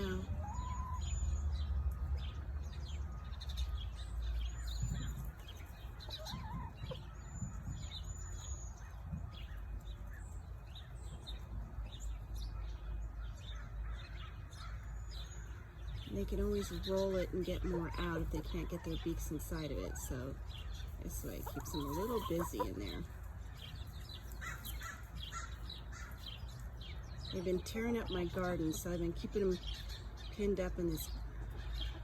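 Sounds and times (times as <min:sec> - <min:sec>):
chickens clucking softly: 0:00.0 - 0:01.1, 0:04.8 - 0:07.9, 0:21.0 - 0:23.1
small birds chirping: 0:00.0 - 0:32.0.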